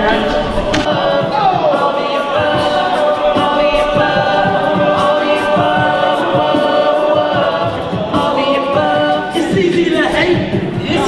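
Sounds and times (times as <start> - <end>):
a cappella group singing: 0.0 - 11.0
steady low beat: 0.0 - 11.0.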